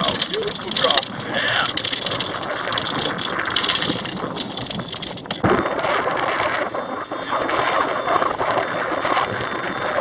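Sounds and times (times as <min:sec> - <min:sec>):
small clicks and knocks: 0:00.0 - 0:05.5
wind buffeting microphone: 0:00.0 - 0:10.0.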